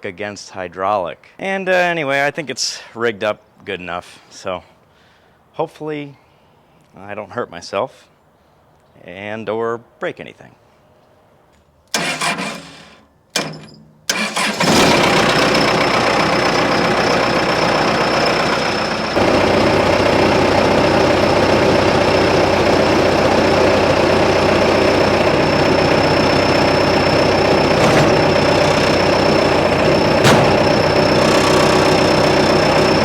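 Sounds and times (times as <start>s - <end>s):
tractor engine cranking: 11.9s - 33.0s
diesel engine running: 14.1s - 33.0s
high hydraulic whine: 17.3s - 33.0s.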